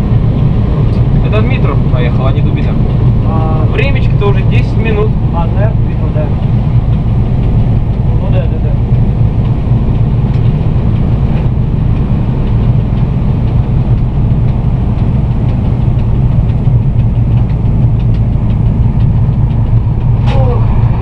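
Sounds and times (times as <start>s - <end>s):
locomotive cab rumble: 0.0s - 21.0s
faint ticks: 9.4s - 20.4s.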